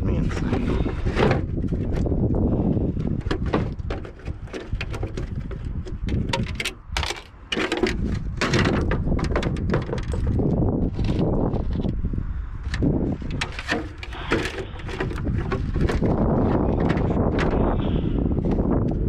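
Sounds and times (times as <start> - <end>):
microphone handling clicks and knocks: 0.1 - 12.0, 12.6 - 19.0.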